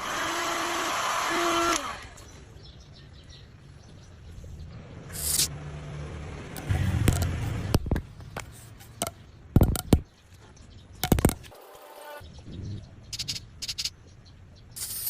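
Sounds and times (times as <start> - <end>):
sharp knocks and clatters: 6.6 - 10.1, 11.0 - 11.5.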